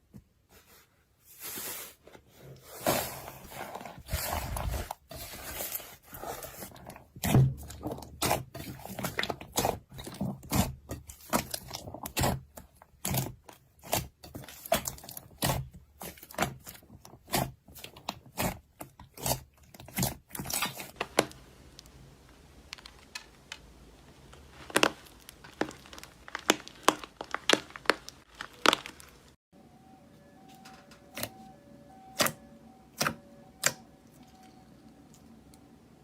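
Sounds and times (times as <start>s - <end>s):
slime popping and crackling: 19.2s - 29.4s.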